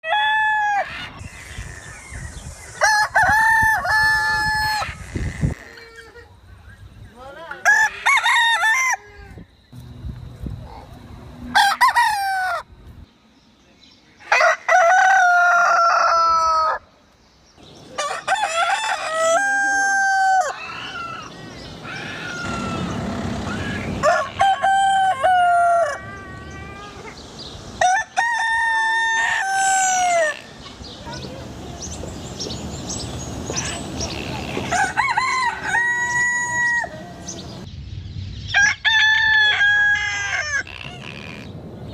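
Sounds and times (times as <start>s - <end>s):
rooster crowing: 0.0s - 1.2s, 2.8s - 5.1s, 7.6s - 9.2s, 11.5s - 12.7s, 14.3s - 16.9s, 18.0s - 27.1s, 27.8s - 30.5s, 34.5s - 37.4s, 38.6s - 41.3s.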